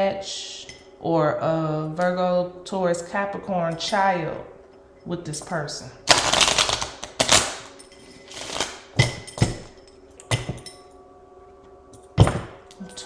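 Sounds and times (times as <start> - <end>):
cards shuffled and slapped down: 6.1 - 7.7, 8.3 - 8.9.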